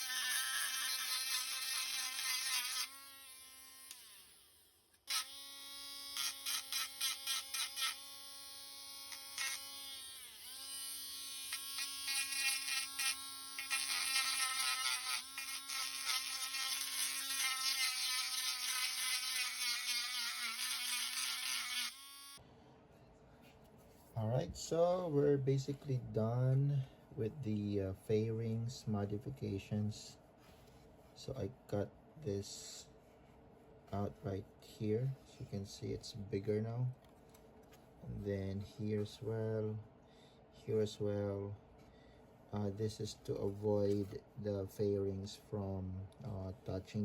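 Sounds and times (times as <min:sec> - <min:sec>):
electric rotary tool whining: 0:00.0 - 0:22.4.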